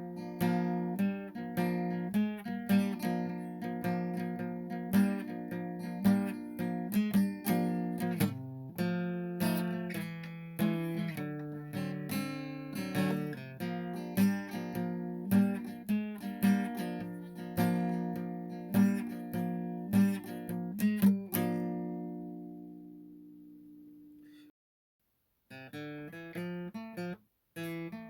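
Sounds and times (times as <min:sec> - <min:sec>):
acoustic guitar strumming: 0:00.0 - 0:24.5, 0:25.5 - 0:28.0.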